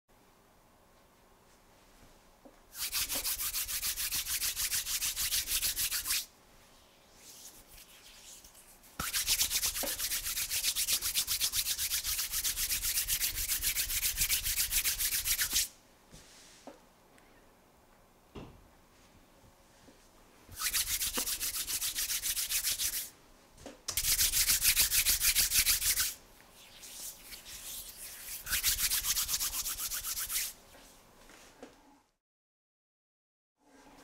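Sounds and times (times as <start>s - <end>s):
hands rubbing together: 2.8s - 6.3s, 7.2s - 15.7s, 20.5s - 23.1s, 24.0s - 30.6s.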